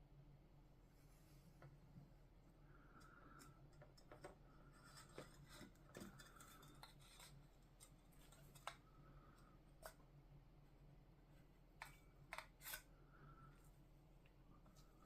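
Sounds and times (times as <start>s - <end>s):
steady low hum: 0.0s - 15.0s
soft rubbing or scraping: 0.9s - 1.6s.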